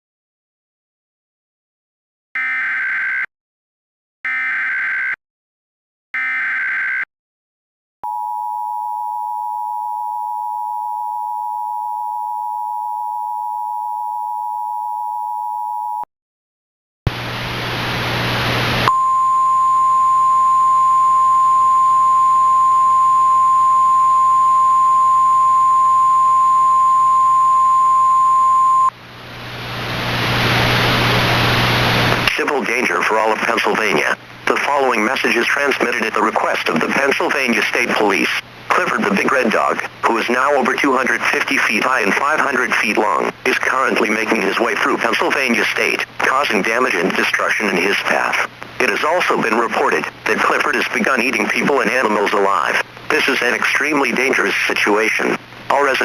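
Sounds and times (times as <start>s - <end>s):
hissing humming radio static: 17.1s - 56.0s
two-tone attention signal: 18.9s - 28.9s.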